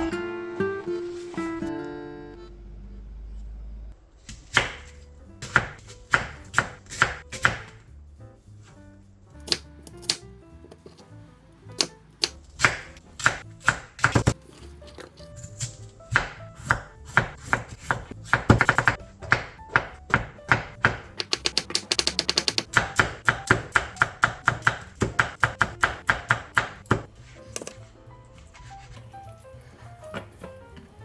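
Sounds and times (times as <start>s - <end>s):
quiet background music: 0.0s - 31.0s
knife chopping on cutting board: 4.3s - 7.8s, 9.4s - 10.2s, 11.8s - 14.4s, 15.4s - 27.8s, 28.5s - 29.0s.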